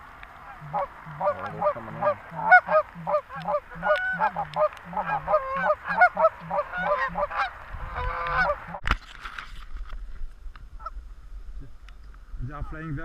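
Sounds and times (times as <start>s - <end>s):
geese honking: 0.4s - 8.8s.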